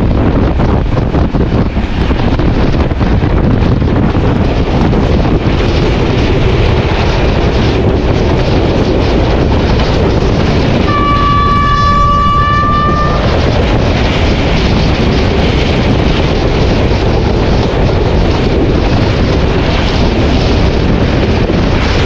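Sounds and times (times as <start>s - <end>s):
diesel locomotive running: 0.0s - 22.0s
locomotive horn: 10.9s - 13.6s.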